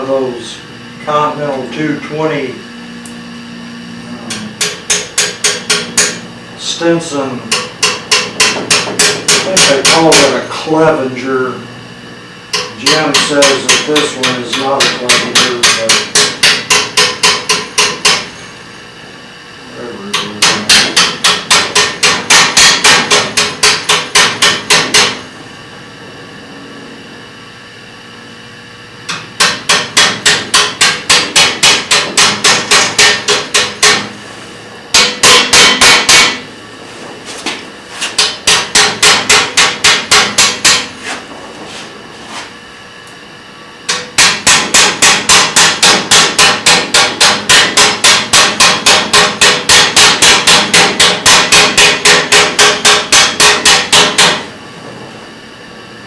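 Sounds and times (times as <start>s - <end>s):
hammer striking metal: 4.3s - 6.2s, 7.5s - 10.5s, 12.5s - 18.3s, 20.1s - 25.2s, 29.1s - 34.1s, 34.9s - 36.4s, 38.2s - 40.9s, 43.9s - 54.5s.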